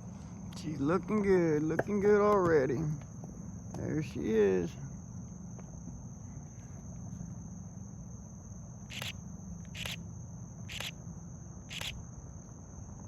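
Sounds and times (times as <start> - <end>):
crickets trilling: 0.0 - 13.0
loud insect chirp: 0.0 - 13.0.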